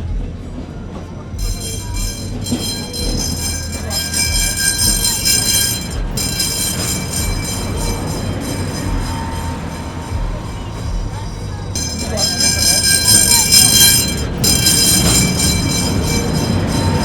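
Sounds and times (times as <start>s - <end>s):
tram rumbling past: 1.1s - 17.0s
high-pitched tram whine: 1.4s - 17.0s.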